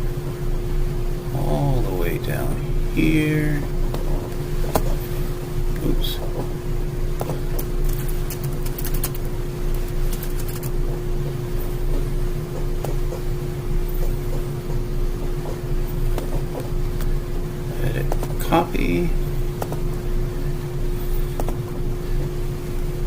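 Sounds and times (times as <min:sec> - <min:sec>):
low mechanical hum: 0:00.0 - 0:23.0
computer mouse clicks: 0:07.6 - 0:10.7.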